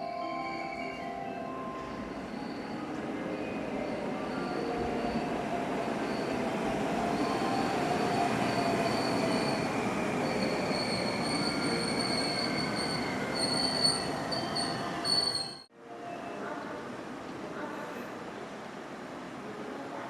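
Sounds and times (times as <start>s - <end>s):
high-pitched wheel squeal: 8.0s - 15.7s.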